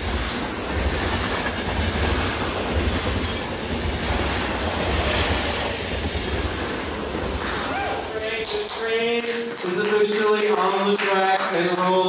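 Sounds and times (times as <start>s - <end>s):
wheels clattering over rails: 0.0s - 8.9s
train rumbling on tracks: 0.0s - 11.9s.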